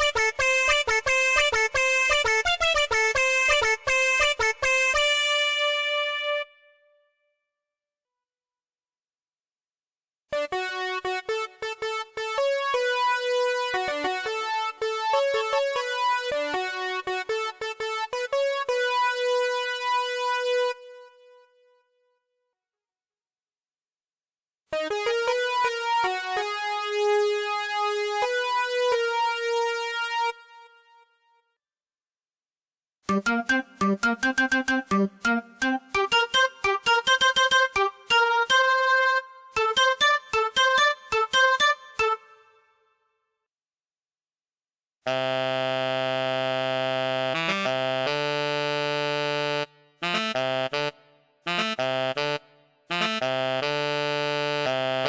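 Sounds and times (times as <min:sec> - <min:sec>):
synthesizer keyboard notes: 0:10.4 - 0:21.2, 0:24.8 - 0:30.8, 0:33.1 - 0:42.7.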